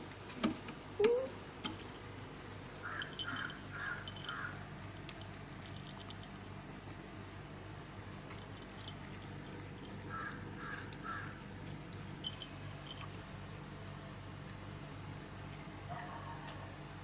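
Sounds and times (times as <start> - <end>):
faint low hum: 0.0 - 17.0
harsh animal calls: 2.8 - 4.7, 10.0 - 11.5.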